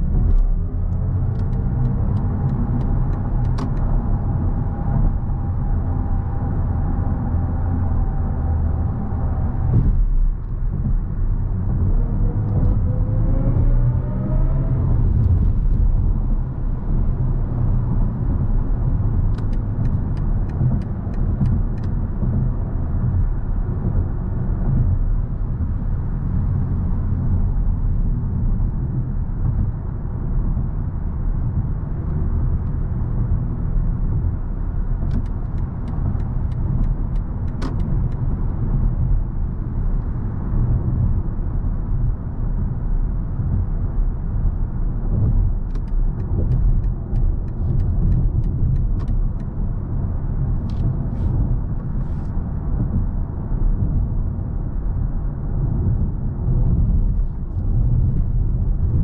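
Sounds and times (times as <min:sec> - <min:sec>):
car cabin road rumble: 0:00.0 - 0:59.0
light ticks: 0:35.0 - 0:38.3, 0:45.6 - 0:49.6.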